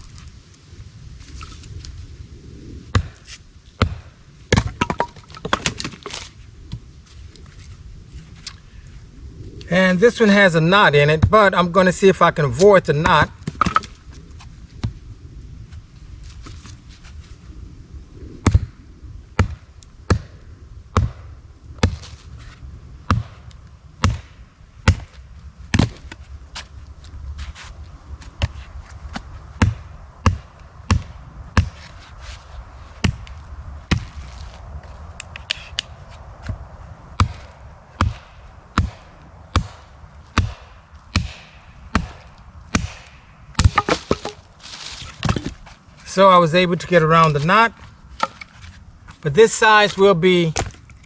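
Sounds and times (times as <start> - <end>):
axe chopping log: 2.9 - 6.3, 13.0 - 14.0, 19.4 - 20.3, 21.0 - 21.2, 21.8 - 22.1, 23.1 - 23.4, 24.0 - 25.1, 25.7 - 26.2, 28.4 - 31.9, 37.2 - 37.4, 38.0 - 45.6, 48.2 - 48.7, 50.6 - 50.8.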